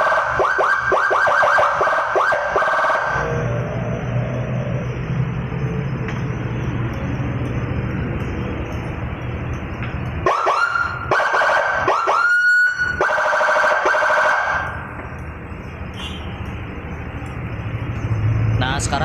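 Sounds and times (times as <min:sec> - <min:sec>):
police siren whooping and warbling: 0:00.0 - 0:05.6, 0:10.2 - 0:14.9.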